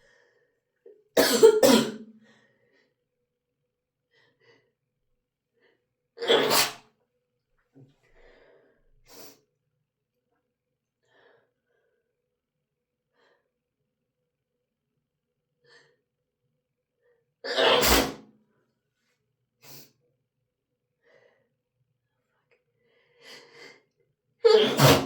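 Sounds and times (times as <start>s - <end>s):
person sneezing: 1.2s - 2.1s, 6.2s - 6.8s, 17.5s - 18.2s, 24.5s - 25.0s.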